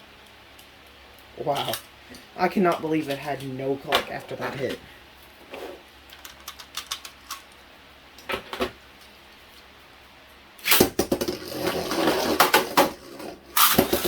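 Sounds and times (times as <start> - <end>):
spinning tops launched with clack: 10.6 - 11.3, 13.6 - 14.0
spinning tops scraping rattle: 10.6 - 14.0.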